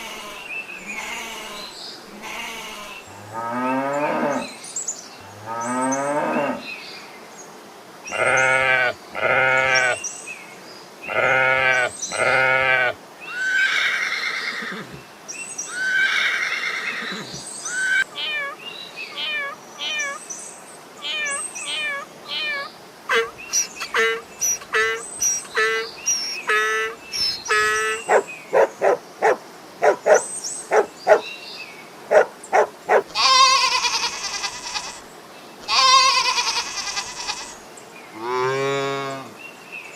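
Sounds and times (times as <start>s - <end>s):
drawn-out bleats: 0.0s - 4.5s, 8.1s - 10.0s, 11.1s - 15.0s, 33.1s - 35.0s, 35.6s - 37.6s
short animal calls: 17.1s - 20.2s, 21.0s - 31.2s.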